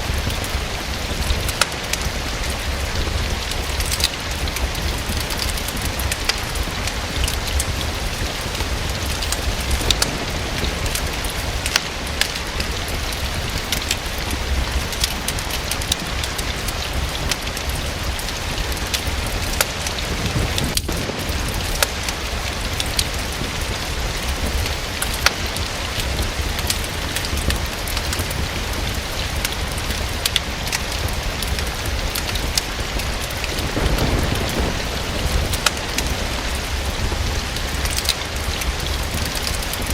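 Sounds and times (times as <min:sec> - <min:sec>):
rain with dripping clicks: 0:00.0 - 0:39.9.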